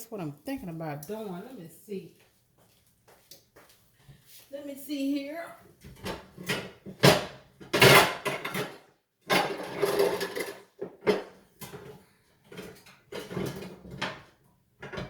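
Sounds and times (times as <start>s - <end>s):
dishes and pans clattering: 6.0s - 15.0s.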